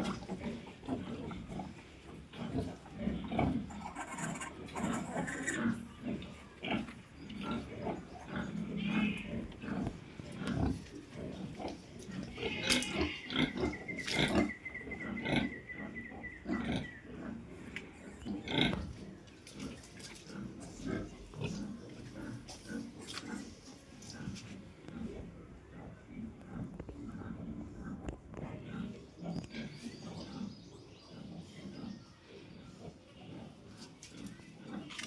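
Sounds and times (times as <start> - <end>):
pigs grunting: 0.0 - 35.0
pigs squealing: 3.2 - 17.4.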